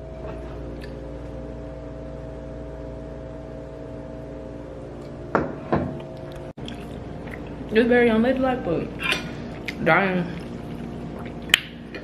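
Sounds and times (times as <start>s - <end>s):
kitchen machine humming: 0.0s - 12.0s.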